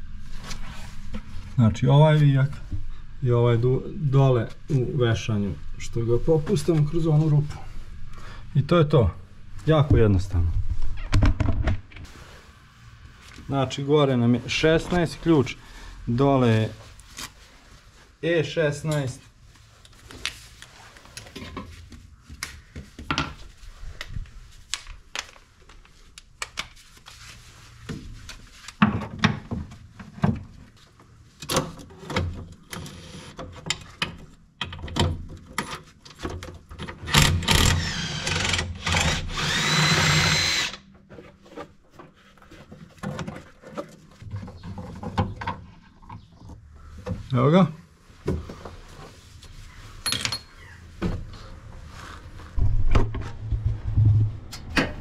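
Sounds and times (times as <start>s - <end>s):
power tool spinning out bolt: 37.1s - 40.8s
metal tools clicking and knocking: 50.0s - 50.6s.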